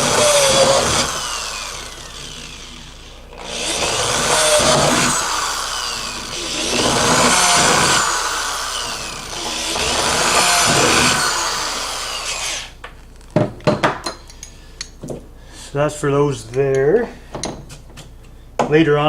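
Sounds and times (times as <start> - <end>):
power drill boring a hole: 0.0 - 12.8.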